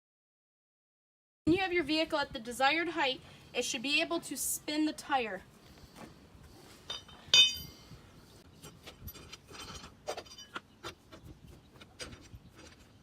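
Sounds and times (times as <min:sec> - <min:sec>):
metallic clank with ringing: 0:06.9 - 0:07.8.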